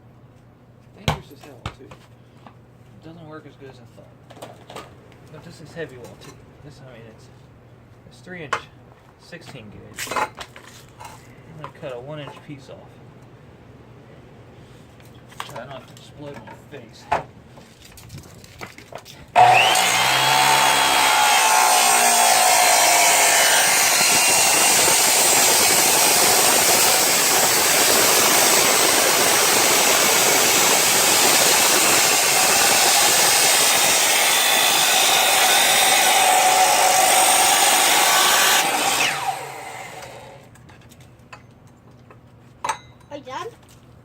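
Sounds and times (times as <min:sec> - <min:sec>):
saw grinding through metal tube: 0:19.4 - 0:40.4.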